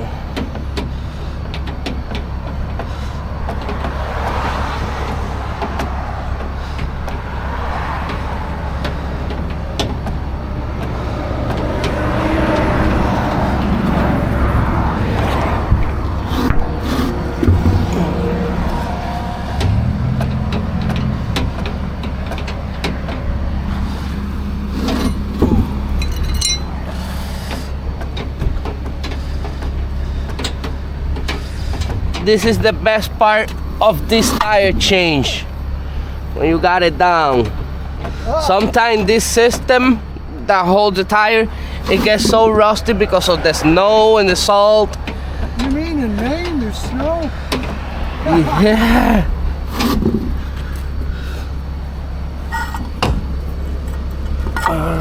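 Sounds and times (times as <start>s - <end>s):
low engine hum: 0.0s - 55.0s
tool clicks and metallic knocks: 19.6s - 34.8s, 52.5s - 55.0s.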